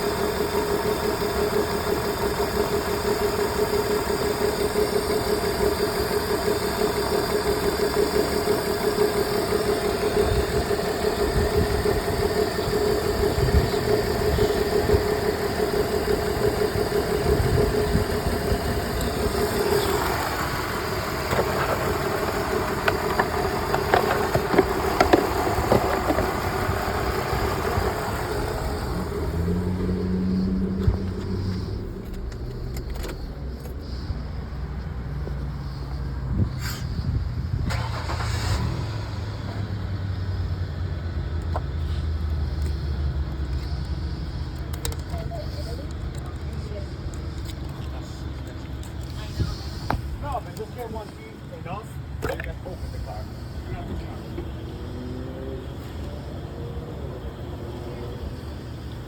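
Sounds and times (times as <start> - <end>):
steady whine: 0.0 - 40.8
car engine idling: 0.0 - 59.0.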